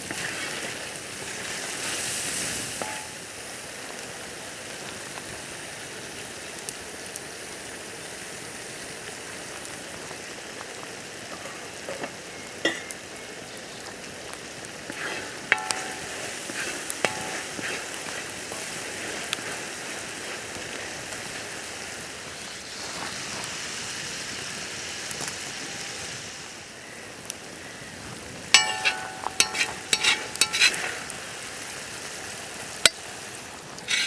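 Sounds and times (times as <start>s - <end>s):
food sizzling in a pan: 0.0s - 34.0s
utensil clinking against pan: 2.8s - 3.2s, 11.3s - 13.0s, 14.9s - 19.3s, 28.6s - 31.2s.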